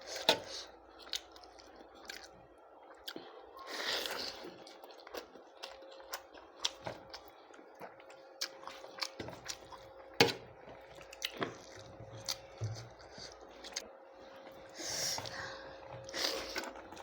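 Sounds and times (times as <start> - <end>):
faint steady hum: 0.0 - 17.0
wet chewing and mouth smacks: 4.6 - 14.6.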